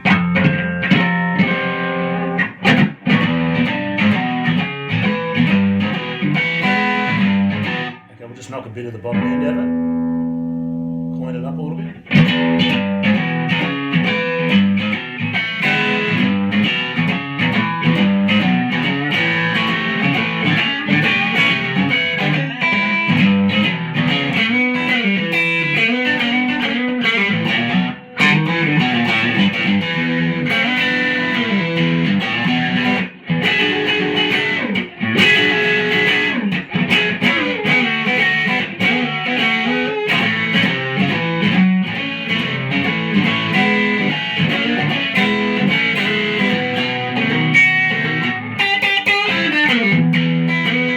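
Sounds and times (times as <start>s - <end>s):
electric guitar through amp: 0.0s - 8.4s, 9.0s - 50.9s.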